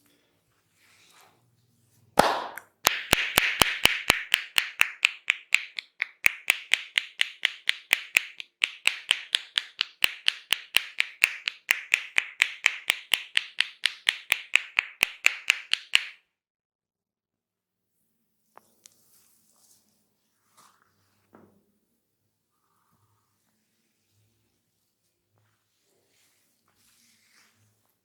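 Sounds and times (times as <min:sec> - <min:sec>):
hands slapping on head: 0:02.2 - 0:16.2.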